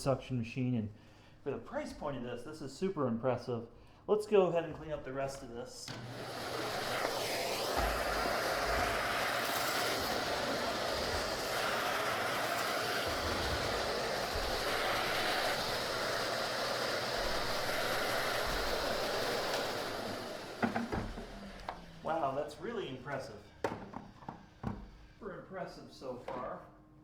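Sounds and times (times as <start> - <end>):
vacuum cleaner running: 4.5 - 25.2
floor tool rumbling: 6.4 - 22.0.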